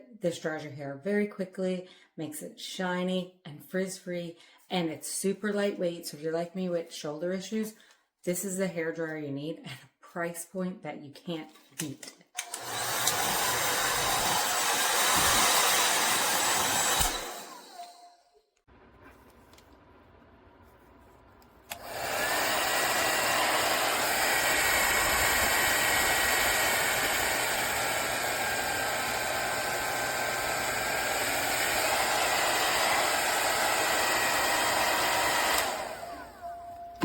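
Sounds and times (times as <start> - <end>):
hair dryer switch click: 12.4 - 13.2, 21.7 - 22.0
hair dryer running: 12.4 - 17.9, 21.7 - 37.0.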